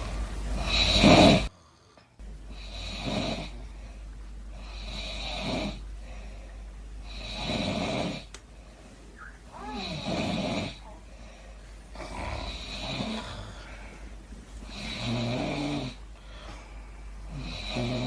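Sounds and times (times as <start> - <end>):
woman snoring: 0.6 - 1.5, 2.5 - 3.7, 4.5 - 5.8, 7.0 - 8.3, 9.5 - 11.1, 12.0 - 13.8, 14.7 - 16.0, 17.3 - 18.0.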